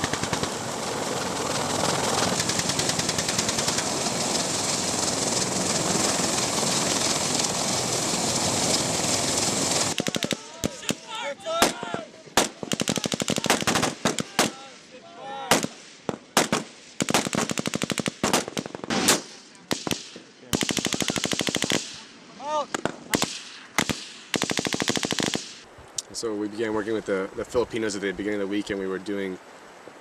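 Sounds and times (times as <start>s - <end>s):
automatic gunfire bursts: 0.0s - 4.8s, 12.4s - 14.6s, 16.4s - 22.0s, 23.1s - 25.6s
single gunshots: 11.6s - 14.7s, 15.5s - 22.0s.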